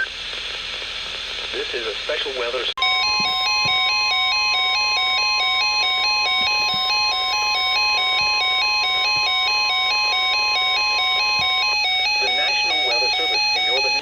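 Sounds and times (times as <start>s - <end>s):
steady alarm tone: 2.8s - 14.0s
two-pitch beeping tone: 2.8s - 14.0s.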